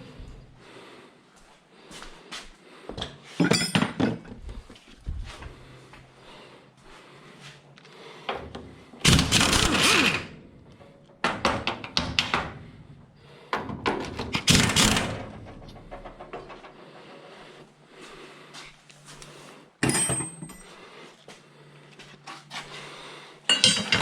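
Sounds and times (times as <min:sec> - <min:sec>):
sharp metal knocks and clanks: 0:13.6 - 0:16.8.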